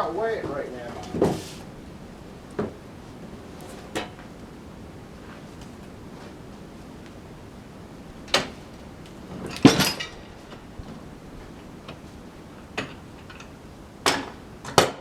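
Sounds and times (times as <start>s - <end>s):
background noise: 0.0s - 15.0s.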